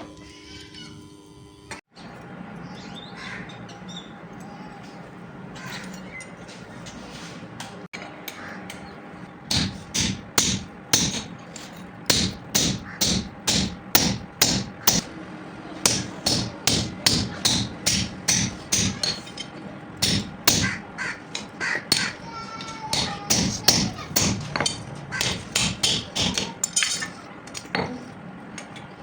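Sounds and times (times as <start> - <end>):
hammer striking hot steel: 9.5 - 15.1, 15.8 - 28.0.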